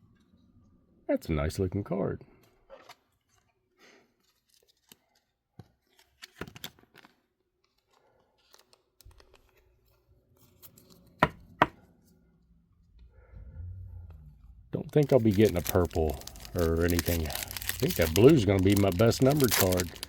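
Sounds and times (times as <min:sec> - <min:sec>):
cards rustling and clicking: 0:04.2 - 0:11.6, 0:15.0 - 0:20.0.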